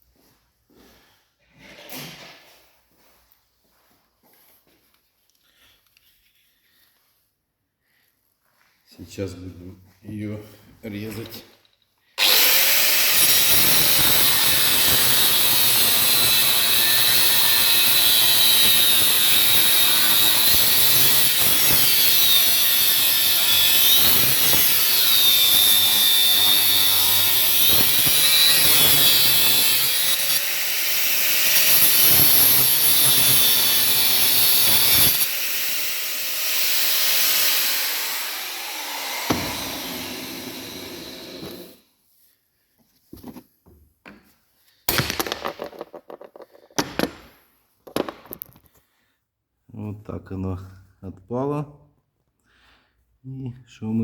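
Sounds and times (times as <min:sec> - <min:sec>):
power tool cutting metal: 0:12.2 - 0:41.8.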